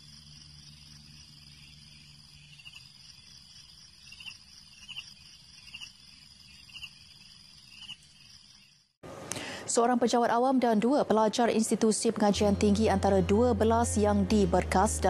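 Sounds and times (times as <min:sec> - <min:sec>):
insects chirping: 0:00.0 - 0:09.0.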